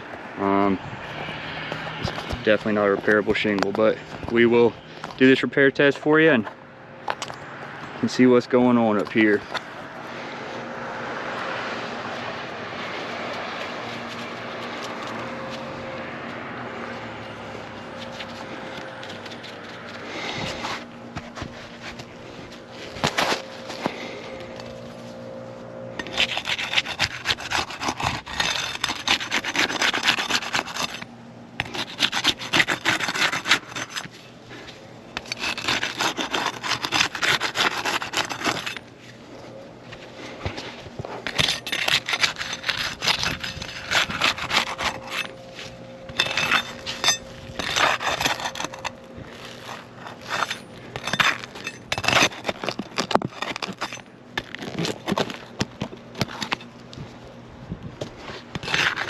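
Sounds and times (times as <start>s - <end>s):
pry bar scraping under shingles: 0.4s - 7.4s, 17.8s - 25.2s, 25.9s - 57.1s, 58.0s - 59.0s.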